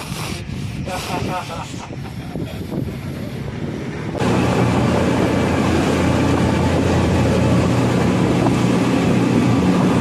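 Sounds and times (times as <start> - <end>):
wind: 0.0 - 10.0
boat engine running: 2.8 - 10.0
water rushing: 4.2 - 10.0.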